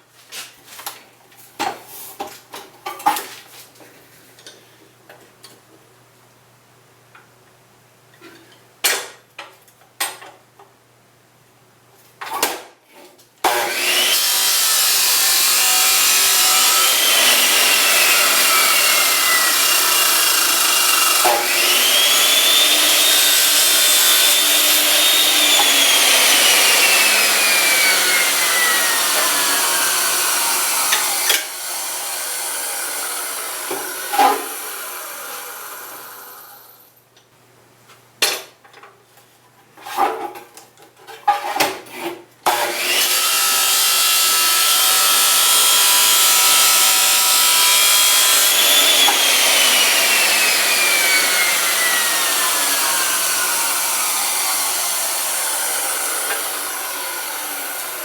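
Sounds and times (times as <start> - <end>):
power saw cutting metal: 13.4 - 36.9, 42.5 - 58.0.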